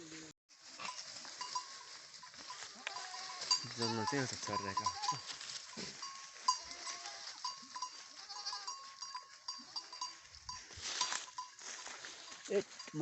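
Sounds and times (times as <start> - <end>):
goats bleating: 0.8 - 10.1.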